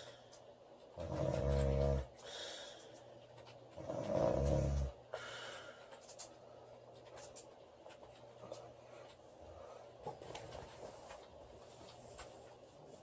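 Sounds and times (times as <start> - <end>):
woman snoring: 1.0 - 2.1, 3.8 - 5.0.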